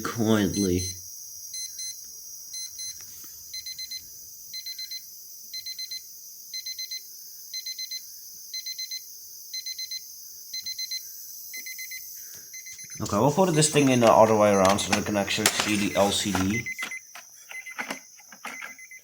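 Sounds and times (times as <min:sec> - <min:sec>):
alarm clock beeping: 0:00.4 - 0:01.0, 0:03.6 - 0:04.0, 0:12.6 - 0:19.0.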